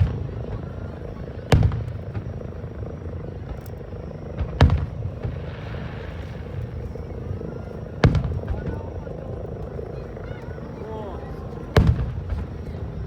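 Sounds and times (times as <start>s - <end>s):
firework crackle: 0.0s - 2.6s, 3.4s - 9.0s
low rumble of fireworks: 0.0s - 13.0s
firework boom: 4.4s - 6.7s, 8.0s - 8.9s, 11.7s - 12.6s.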